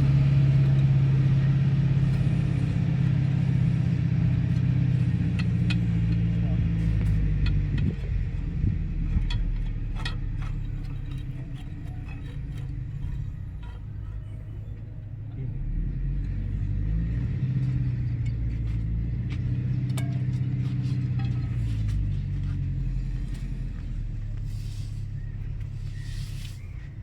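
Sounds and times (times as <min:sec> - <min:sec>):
heavy machine engine running: 0:00.0 - 0:27.0
light knocks and clinks: 0:17.6 - 0:24.0.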